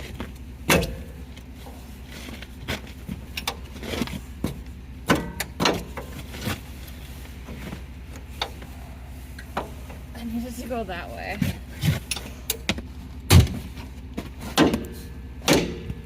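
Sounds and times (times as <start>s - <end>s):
metal clanks and knocks: 0.0s - 6.6s, 11.3s - 16.0s
low hum: 0.0s - 16.0s.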